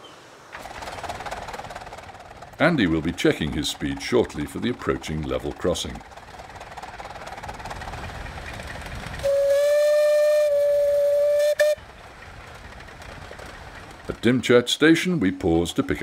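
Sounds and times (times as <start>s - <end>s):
steam locomotive running: 0.6s - 16.0s
steam whistle: 9.2s - 11.8s.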